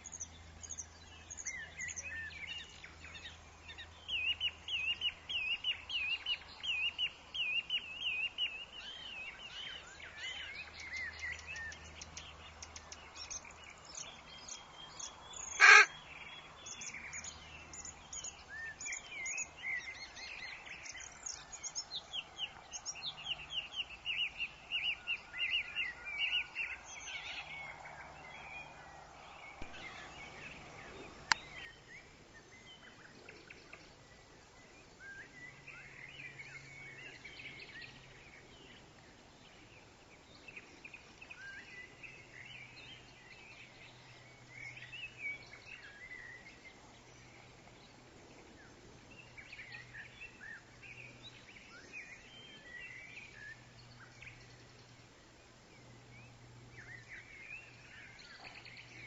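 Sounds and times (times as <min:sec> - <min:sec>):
woodland birds chirping: 0:00.0 - 0:59.0.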